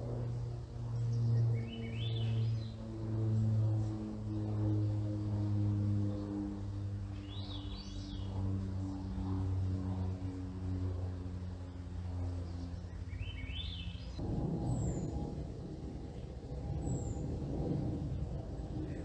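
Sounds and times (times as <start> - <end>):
low engine drone: 0.0 - 19.0
songbird trills: 12.9 - 15.1.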